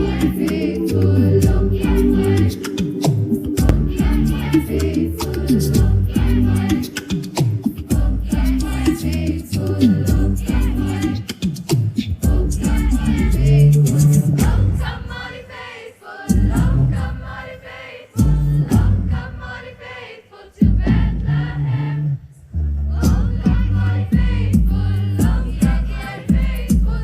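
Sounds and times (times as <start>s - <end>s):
deep bass line: 0.0s - 6.9s, 8.0s - 11.2s, 12.2s - 14.8s, 16.3s - 17.0s, 18.2s - 19.2s, 20.6s - 27.0s
girls' choir singing: 0.0s - 11.3s, 12.2s - 22.1s, 22.9s - 27.0s
sharp percussive beats: 1.4s - 15.0s.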